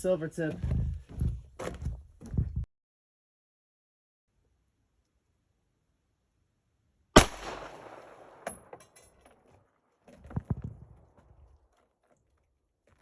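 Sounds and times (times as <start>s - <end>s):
pistol shot with echo: 7.2s - 8.6s.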